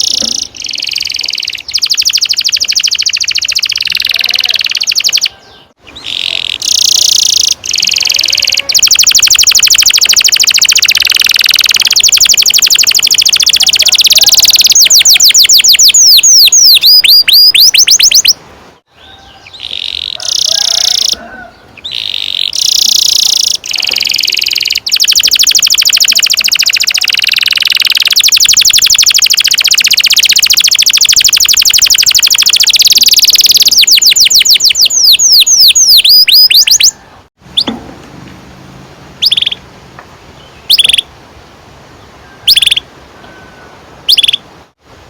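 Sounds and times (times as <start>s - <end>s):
canary singing fast trills: 0.0s - 37.8s, 39.2s - 39.7s, 40.4s - 41.1s, 42.0s - 42.9s, 44.0s - 44.5s.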